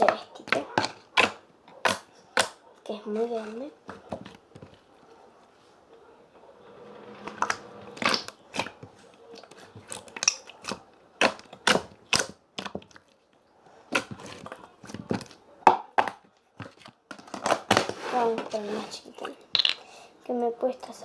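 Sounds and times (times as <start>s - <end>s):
slime squeezed clicking and popping: 9.5s - 12.7s.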